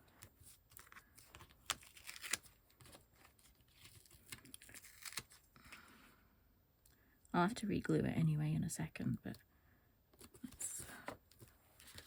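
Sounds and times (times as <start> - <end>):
paper rustling and crinkling: 0.1 - 5.8, 10.2 - 12.0.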